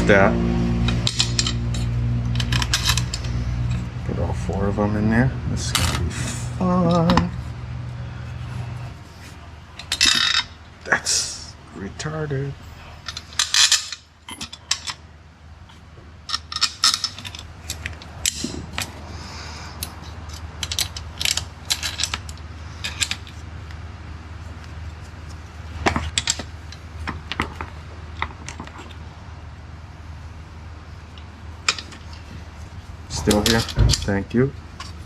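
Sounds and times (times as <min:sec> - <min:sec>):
steady low hum: 0:00.0 - 0:35.0
hand tools clinking on metal: 0:33.1 - 0:34.2.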